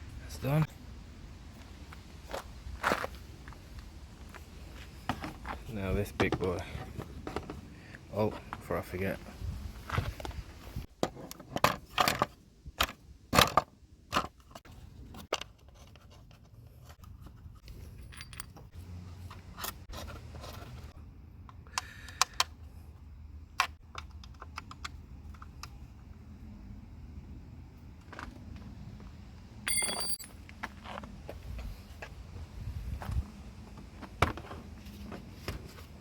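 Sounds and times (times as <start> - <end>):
metal tools clinking: 17.6 - 18.8, 29.7 - 30.4.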